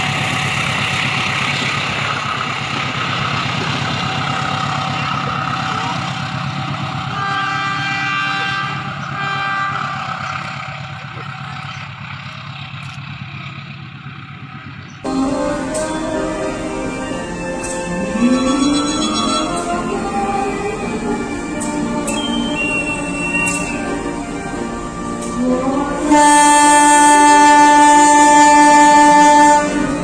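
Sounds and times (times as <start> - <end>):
locomotive rumbling past: 0.0 - 30.0
train air horn blasts: 7.0 - 10.2, 15.1 - 30.0
music: 15.1 - 30.0.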